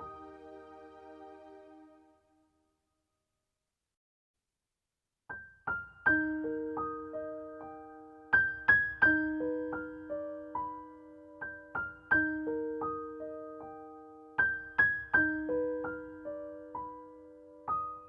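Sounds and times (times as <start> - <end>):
gentle piano melody: 0.0 - 2.1, 5.7 - 18.0.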